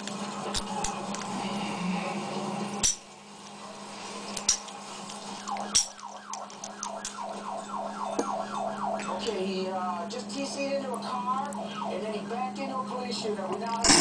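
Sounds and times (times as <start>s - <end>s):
siren sweeping down: 5.4s - 9.2s, 11.5s - 12.4s.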